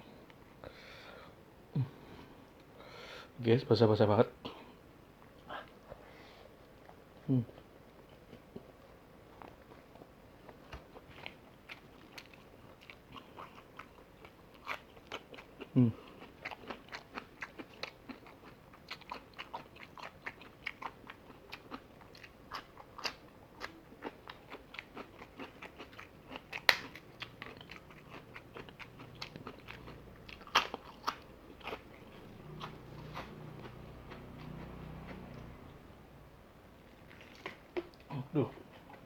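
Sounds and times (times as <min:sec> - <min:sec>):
chewing crunchy fried chicken: 0:06.6 - 0:35.6, 0:36.8 - 0:39.0.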